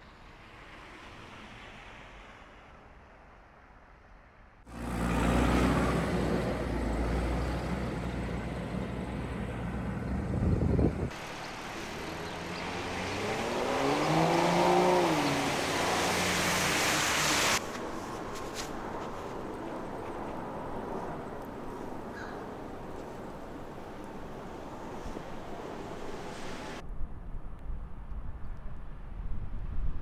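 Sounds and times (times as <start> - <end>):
engine running close by: 4.7 - 26.8
vehicle passing by: 4.7 - 26.8.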